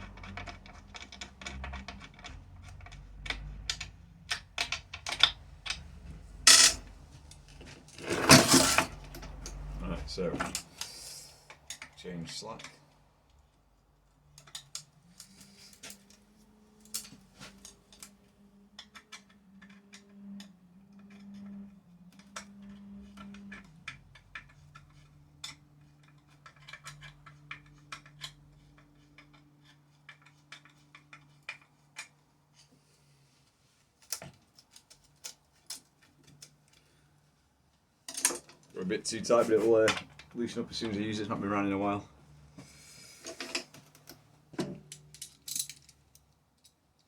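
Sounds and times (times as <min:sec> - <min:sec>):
chainsaw chain clicking: 0:06.5 - 0:06.8.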